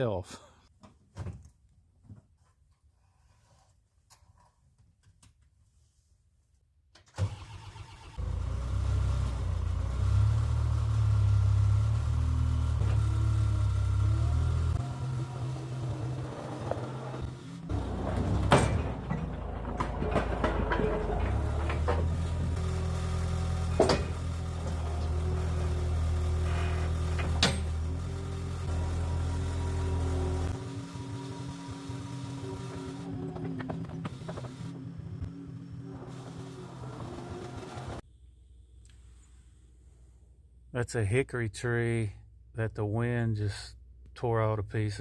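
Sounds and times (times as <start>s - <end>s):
engine starting and idling: 7.1s - 38.0s.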